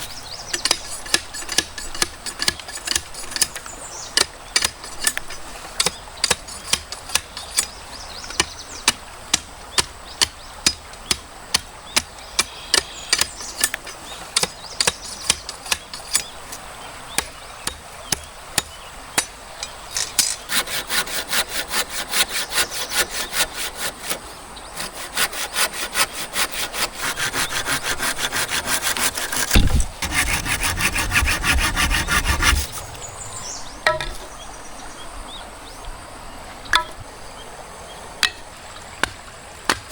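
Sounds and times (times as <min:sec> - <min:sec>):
hand saw cutting bamboo: 0:00.0 - 0:03.7, 0:04.5 - 0:07.8, 0:12.4 - 0:16.3, 0:20.0 - 0:33.0
sharp knocks: 0:27.9 - 0:32.9.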